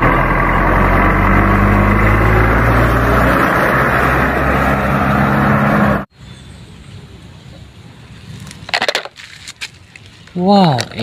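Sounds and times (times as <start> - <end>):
truck engine running: 0.0 - 6.1.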